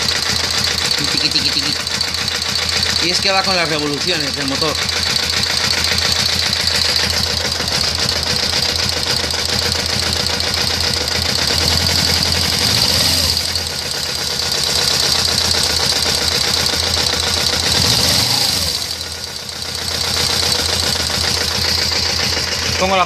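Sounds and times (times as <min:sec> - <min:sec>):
fast rhythmic engine ticking: 0:00.0 - 0:23.0
motorcycle engine running: 0:00.0 - 0:23.0.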